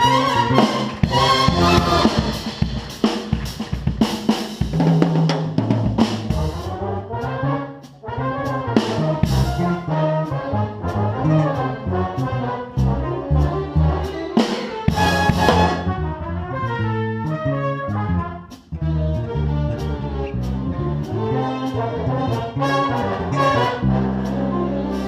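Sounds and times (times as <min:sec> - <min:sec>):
trumpets and trombones: 0:00.0 - 0:02.7, 0:06.2 - 0:25.0
drum kit hits: 0:00.0 - 0:06.6, 0:14.4 - 0:16.0
big band jazz: 0:00.0 - 0:25.0.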